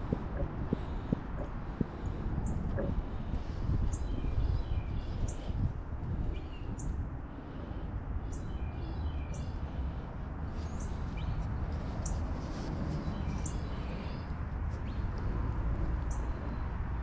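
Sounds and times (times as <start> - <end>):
birds chirping: 0.0 - 11.4
steady low rumble: 0.0 - 17.0.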